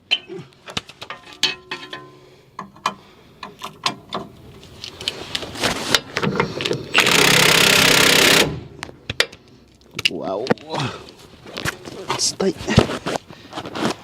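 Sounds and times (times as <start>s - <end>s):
metal tool clicks and knocks: 0.0s - 0.4s, 1.0s - 4.4s
impact wrench hammering: 7.0s - 9.3s.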